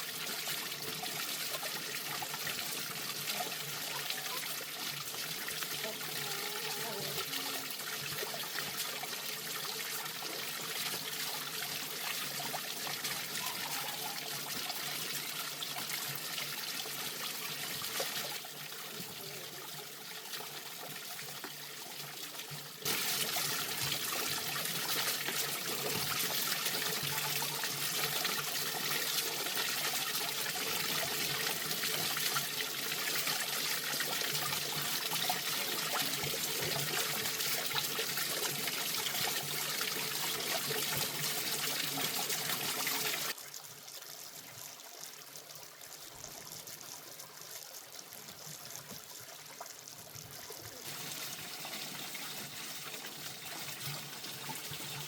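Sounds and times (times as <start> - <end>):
water trickling and splashing: 0.0 - 55.0.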